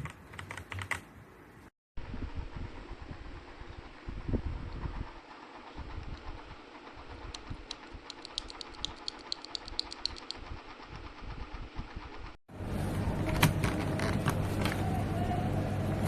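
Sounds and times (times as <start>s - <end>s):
sharp high keyboard clicks: 0.0s - 1.1s, 7.3s - 10.6s.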